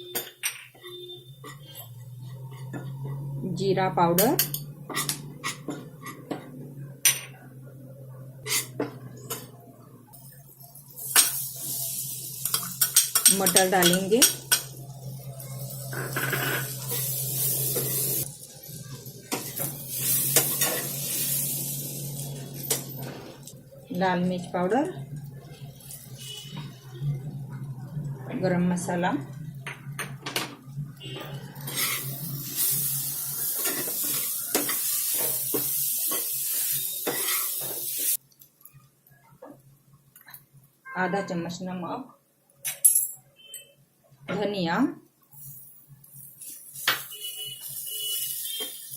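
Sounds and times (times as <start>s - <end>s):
spoon scraping and tapping pan: 4.2s - 6.5s, 12.4s - 14.7s
peas sizzling in hot oil: 10.2s - 27.7s, 31.4s - 38.2s, 45.3s - 48.9s.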